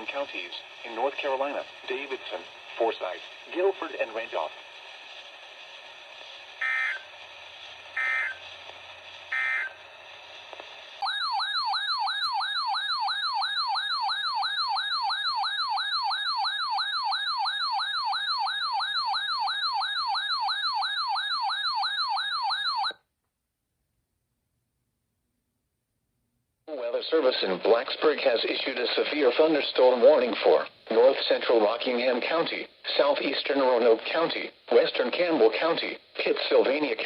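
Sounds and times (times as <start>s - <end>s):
radio hiss: 0.0s - 11.0s, 26.7s - 37.0s
warbling siren-like alert tone: 6.6s - 7.0s, 8.0s - 8.4s, 9.3s - 9.8s
digital data bursts: 6.6s - 7.1s, 8.0s - 8.4s, 9.3s - 9.8s.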